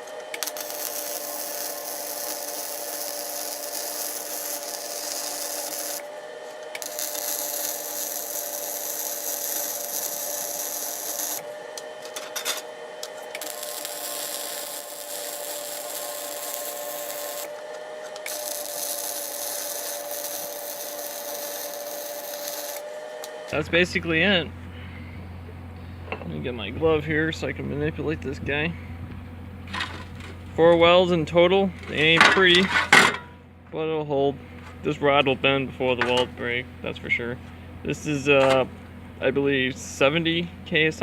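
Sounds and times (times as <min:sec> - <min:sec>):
welder hissing: 0:00.0 - 0:26.2.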